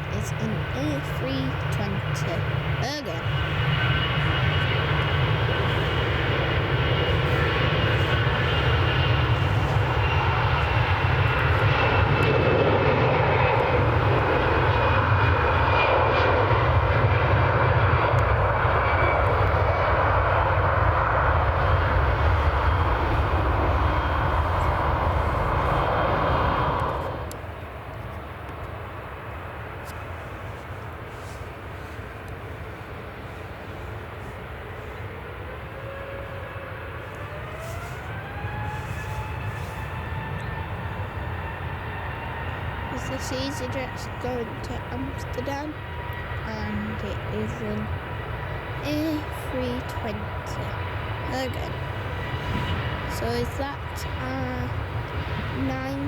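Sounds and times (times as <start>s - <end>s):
jet engine roar and whine: 0.0s - 56.0s.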